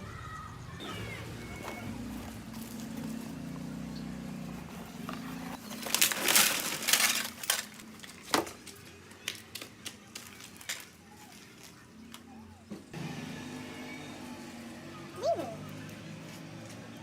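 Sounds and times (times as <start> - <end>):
rustling and crunching: 1.1 - 12.3.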